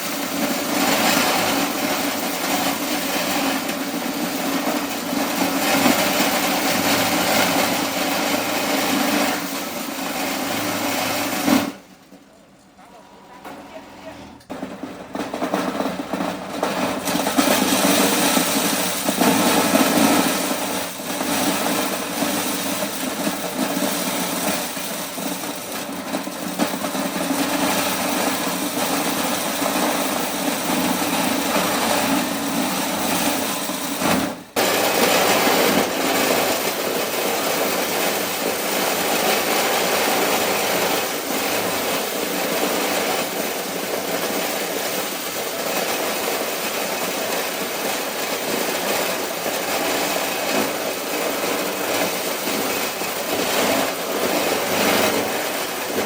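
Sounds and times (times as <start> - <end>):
corn sheller clatter: 0.0 - 12.4, 14.5 - 56.0.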